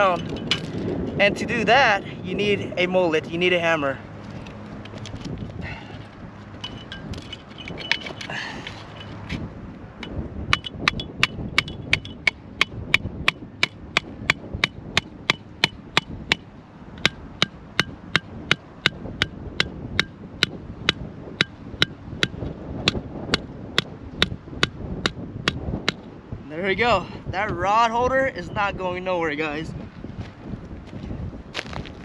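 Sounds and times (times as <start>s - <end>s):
hammer striking metal holder: 10.5s - 16.4s, 17.0s - 23.5s.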